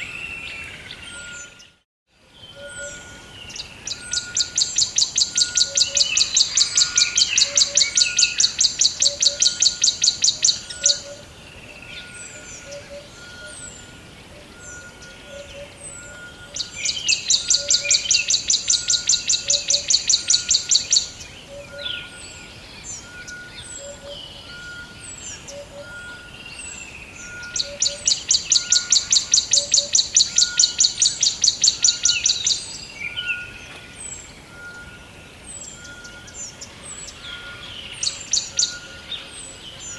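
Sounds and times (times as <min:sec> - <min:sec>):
bird high-pitched trill: 0:02.5 - 0:11.3, 0:12.0 - 0:33.6.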